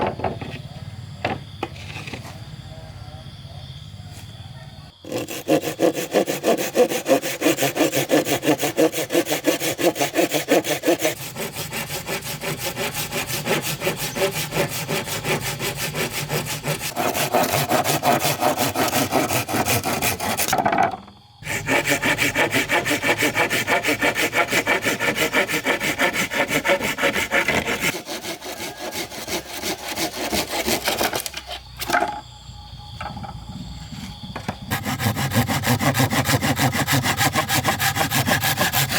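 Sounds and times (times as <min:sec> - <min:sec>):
hand saw cutting wood: 0:05.0 - 0:20.8, 0:21.4 - 0:31.9, 0:34.7 - 0:38.9.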